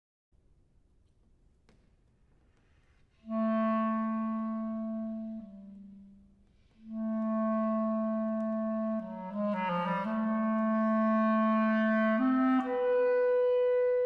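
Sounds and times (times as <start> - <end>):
clarinet playing long low notes: 3.2 - 14.0.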